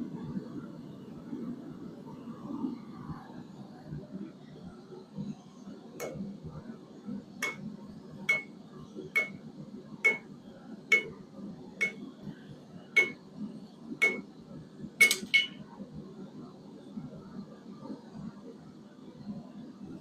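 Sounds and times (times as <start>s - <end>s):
hammer on hot steel over anvil: 7.4s - 7.6s, 9.2s - 9.4s, 10.1s - 10.3s, 10.9s - 11.1s, 11.8s - 12.0s, 13.0s - 13.2s, 14.0s - 14.2s, 15.0s - 15.6s.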